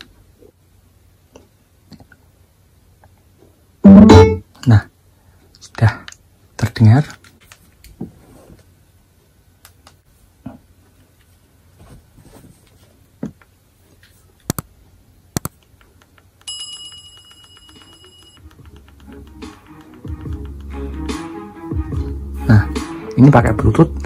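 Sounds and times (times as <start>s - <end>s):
low music: 3.8s - 4.4s, 18.4s - 24.0s
steady electronic tone: 3.8s - 4.4s
sharp clicks and taps: 14.4s - 14.7s, 15.4s - 16.5s, 17.6s - 20.8s.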